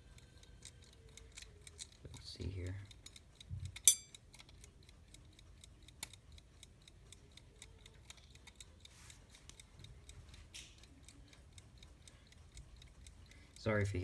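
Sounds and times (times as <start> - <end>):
alarm clock ticking: 0.0 - 14.0.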